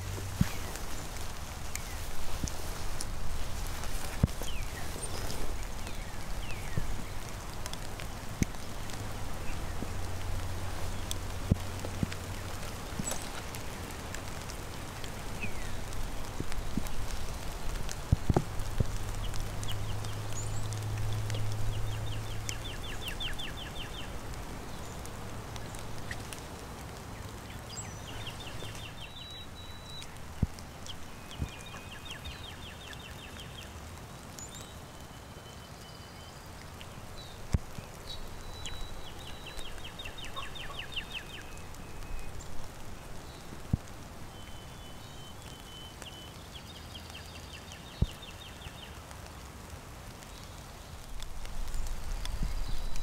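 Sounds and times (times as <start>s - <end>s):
songbirds trilling: 0.0s - 49.0s
steady rain: 0.0s - 53.0s
whistled bird notes: 27.7s - 30.2s.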